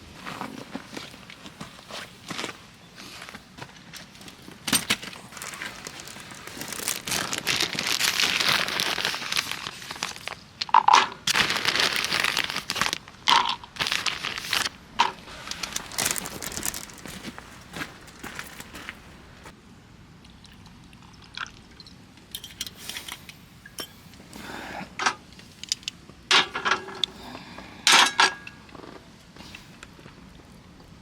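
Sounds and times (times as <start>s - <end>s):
crinkling and rustling: 0.2s - 19.5s.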